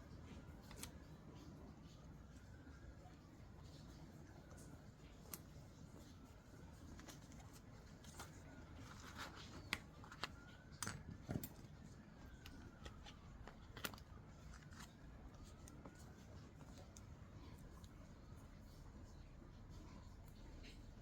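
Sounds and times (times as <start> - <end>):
faint background noise: 0.0 - 21.0
paper shuffling and crinkling: 0.0 - 21.0.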